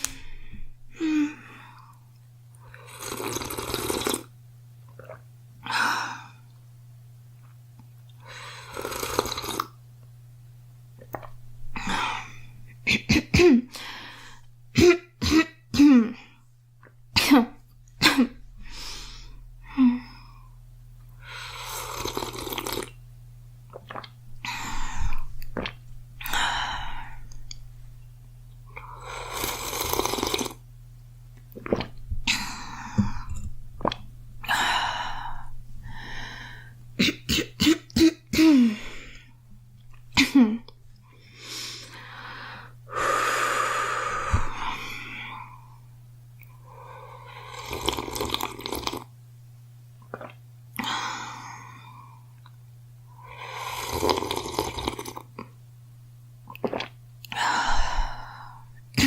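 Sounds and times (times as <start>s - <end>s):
girl coughing: 12.9s - 13.7s, 14.8s - 16.2s, 17.2s - 18.4s, 37.0s - 38.8s, 40.2s - 40.6s
noisy breaths: 34.4s - 36.9s, 41.1s - 45.9s, 57.3s - 58.8s.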